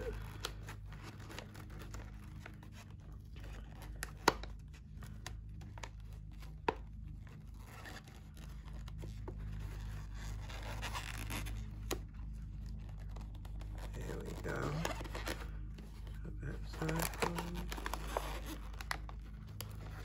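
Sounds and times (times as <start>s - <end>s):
paper rustling: 0.0s - 20.0s
scissors cutting paper: 9.5s - 20.0s.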